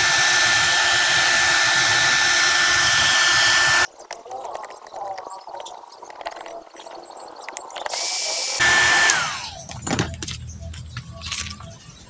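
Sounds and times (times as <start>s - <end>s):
power tool motor whining: 0.0s - 3.9s, 7.9s - 9.6s.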